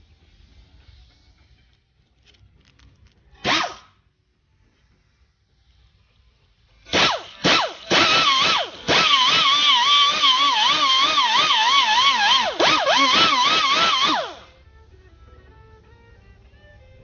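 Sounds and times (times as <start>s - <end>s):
power tool whine: 6.9s - 14.6s.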